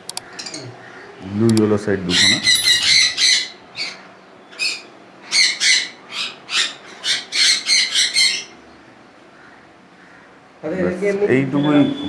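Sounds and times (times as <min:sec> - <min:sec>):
parrots squawking: 0:00.2 - 0:01.2, 0:02.0 - 0:10.4.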